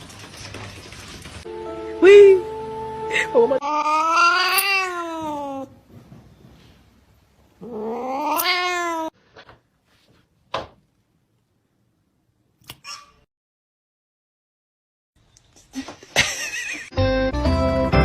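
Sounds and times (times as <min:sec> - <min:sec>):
cat yowling: 0:03.6 - 0:05.8, 0:07.6 - 0:09.2.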